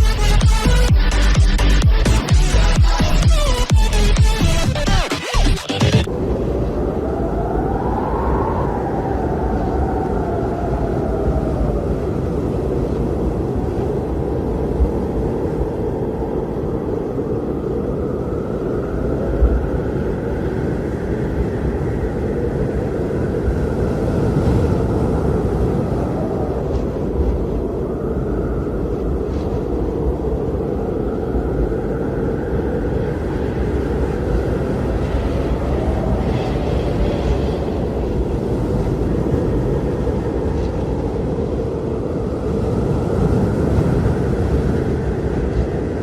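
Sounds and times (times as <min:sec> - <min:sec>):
strong wind rumbling: 0:06.0 - 0:46.0.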